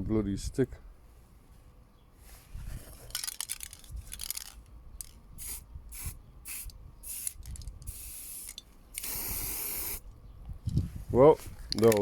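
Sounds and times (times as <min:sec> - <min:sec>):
aerosol spray can hissing: 0:05.4 - 0:10.0.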